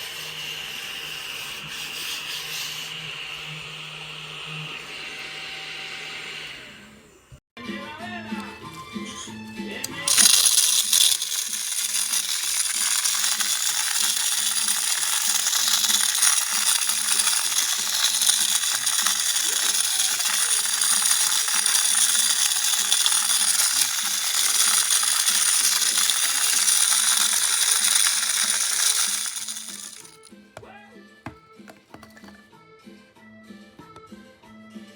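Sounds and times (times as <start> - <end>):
mini vacuum cleaner whining: 2.4 - 7.1, 8.4 - 30.3
debris rattling through vacuum: 9.8 - 30.3.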